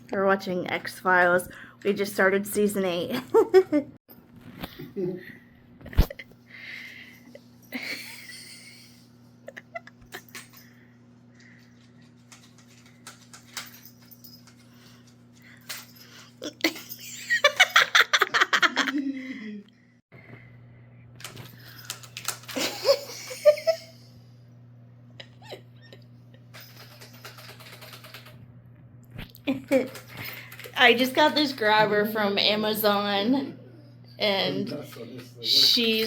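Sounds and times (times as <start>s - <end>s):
person laughing: 7.8s - 10.3s, 16.4s - 19.7s, 22.6s - 24.1s.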